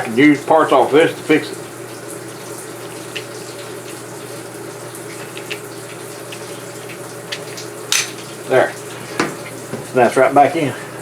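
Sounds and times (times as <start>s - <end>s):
water pouring into washing machine: 0.0s - 11.0s.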